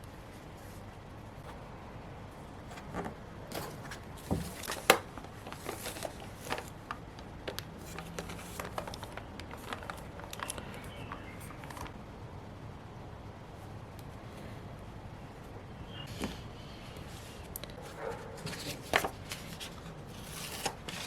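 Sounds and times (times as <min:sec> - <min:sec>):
paper clicks taps and rustles: 0:02.6 - 0:12.0, 0:17.5 - 0:21.0.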